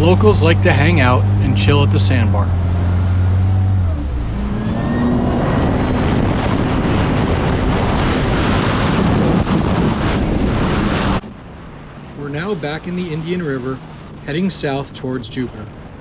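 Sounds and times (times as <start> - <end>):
jet ski engine throttling up: 0.0 - 5.1
wind noise: 0.0 - 14.7.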